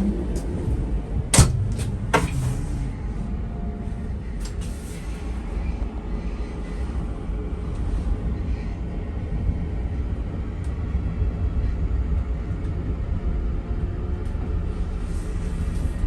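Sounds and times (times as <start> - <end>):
train rumbling: 0.0 - 16.0
sharp knocks: 1.3 - 2.5.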